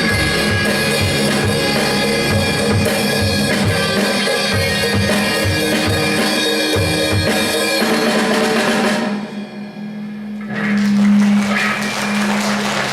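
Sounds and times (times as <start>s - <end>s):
rock band playing: 0.0s - 12.6s.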